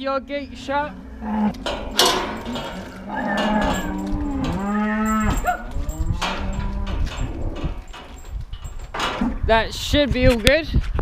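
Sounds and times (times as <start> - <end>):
cattle mooing: 0.1 - 7.8
sharp metal clank: 1.5 - 9.3.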